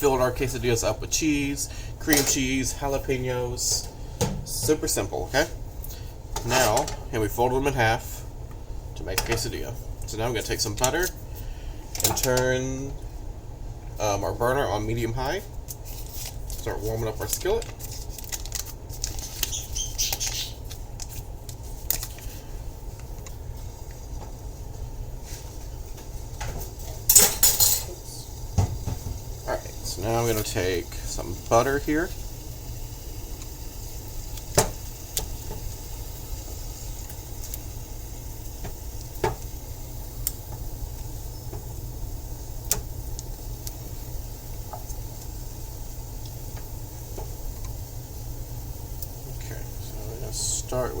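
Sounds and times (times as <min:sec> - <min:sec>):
steady low hum: 0:00.0 - 0:51.0
pet birds chirping: 0:19.2 - 0:20.7.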